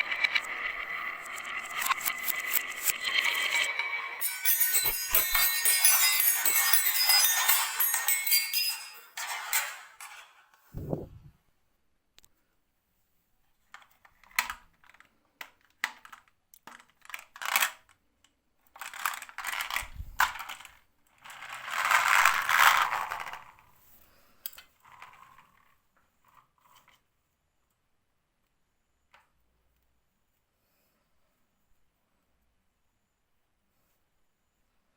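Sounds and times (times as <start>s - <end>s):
marbles rolling down wooden run: 0.0s - 9.8s, 21.3s - 23.6s.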